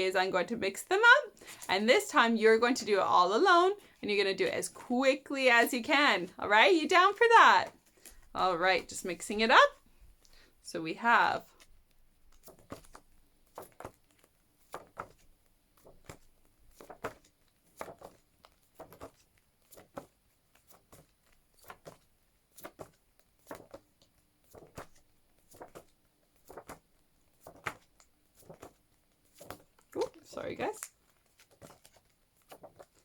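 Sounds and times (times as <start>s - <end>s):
flashcards flipping paper rustle: 1.4s - 1.7s, 6.7s - 9.4s, 11.5s - 33.0s.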